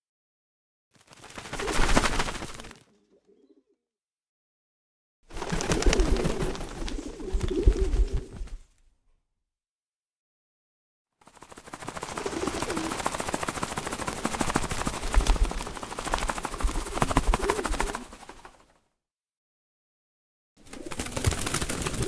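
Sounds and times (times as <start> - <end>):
pigeon wings flapping: 1.0 - 3.0, 5.3 - 8.7, 11.3 - 18.8, 20.6 - 22.0
low pigeon coo: 2.8 - 3.8, 5.5 - 8.6.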